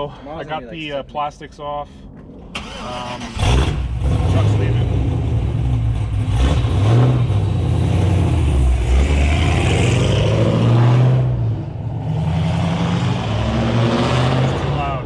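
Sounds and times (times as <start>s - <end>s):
loud car engine running: 3.2s - 15.0s.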